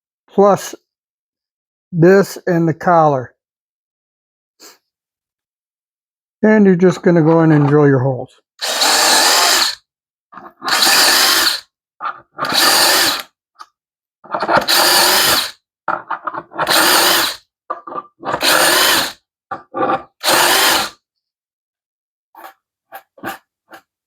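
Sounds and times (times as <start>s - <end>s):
drill trigger blips: 8.6s - 9.8s, 10.6s - 11.6s, 12.4s - 13.3s, 14.3s - 15.5s, 16.6s - 17.4s, 18.2s - 19.2s
power drill boring holes: 8.6s - 9.8s, 10.4s - 13.3s, 14.2s - 21.0s.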